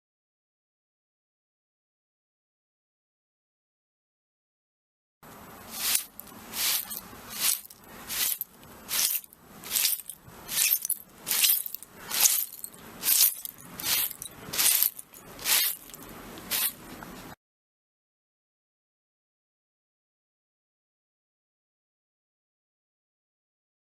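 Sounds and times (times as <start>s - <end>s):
broom sweeping broken glass: 5.6s - 16.9s.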